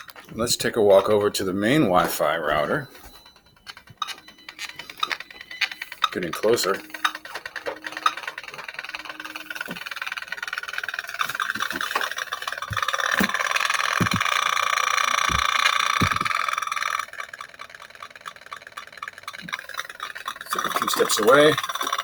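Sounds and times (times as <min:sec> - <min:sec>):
detector speaker buzzing and crackling: 0:00.0 - 0:22.0
dull knocks: 0:15.3 - 0:16.4.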